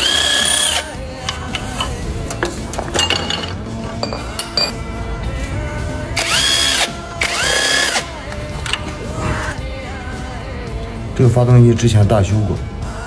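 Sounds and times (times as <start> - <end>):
power tool whine: 0.0 - 0.8, 6.2 - 8.1.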